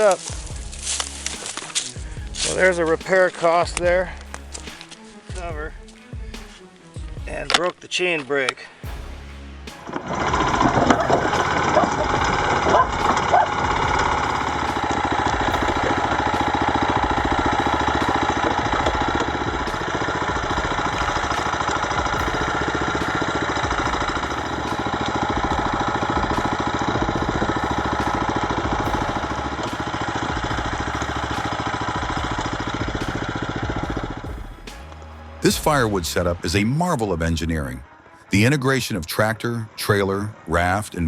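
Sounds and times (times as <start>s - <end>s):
engine running steadily: 10.1s - 34.8s.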